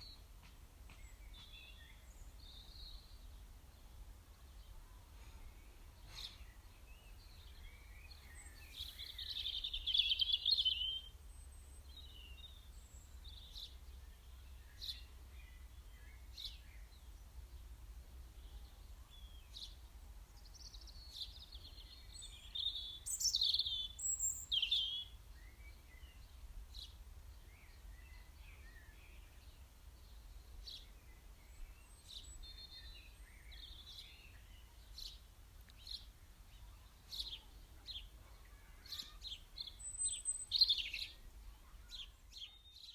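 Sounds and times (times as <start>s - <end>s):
songbirds chirping and singing: 6.0s - 16.9s, 20.6s - 29.5s, 30.1s - 42.9s.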